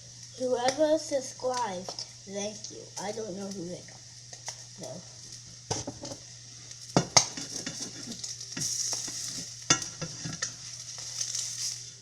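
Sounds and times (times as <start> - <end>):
eggs sizzling in a pan: 0.0 - 12.0
utensil knocking and scraping pan: 7.0 - 10.6.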